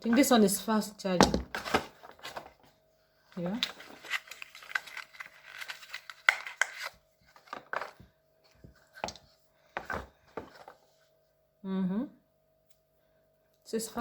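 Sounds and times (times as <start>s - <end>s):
cardboard and plastic rustling: 1.4s - 2.8s, 3.4s - 11.0s.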